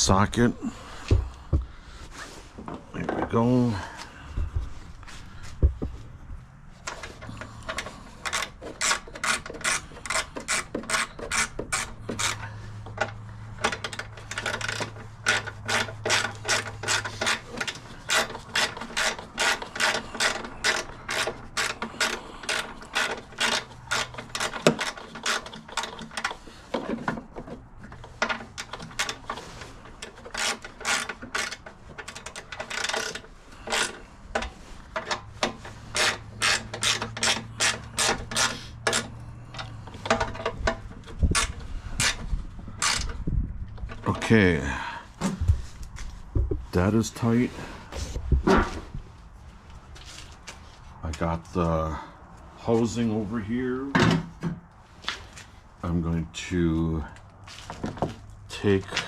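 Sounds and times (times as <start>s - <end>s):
ratchet wrench clicking: 7.6s - 12.5s, 30.0s - 34.0s.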